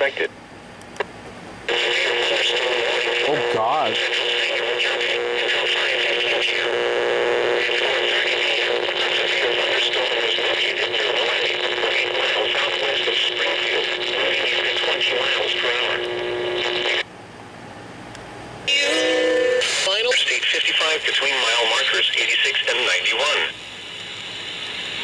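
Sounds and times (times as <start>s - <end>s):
garbled radio voice: 0.0s - 0.3s, 1.7s - 6.8s, 7.4s - 17.0s, 19.6s - 23.5s
radio static hiss: 0.0s - 0.3s, 1.7s - 17.1s, 19.6s - 25.0s
steady hum: 0.0s - 25.0s.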